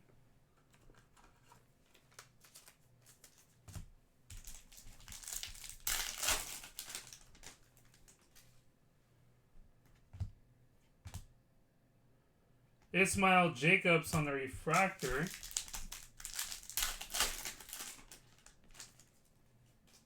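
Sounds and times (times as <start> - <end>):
wrapper crinkling and tearing: 1.4 - 3.6, 4.4 - 8.5, 14.7 - 19.2
cards clicking: 14.1 - 15.8.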